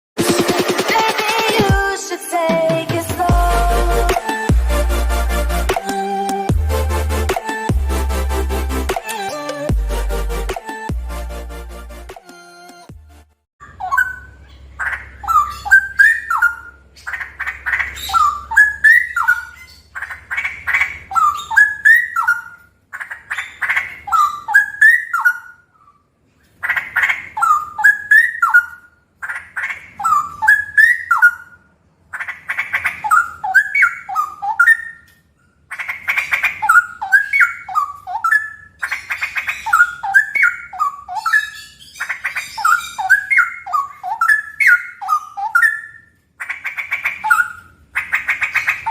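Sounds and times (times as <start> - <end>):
bird singing rapid song: 13.6 - 25.6, 35.8 - 48.9.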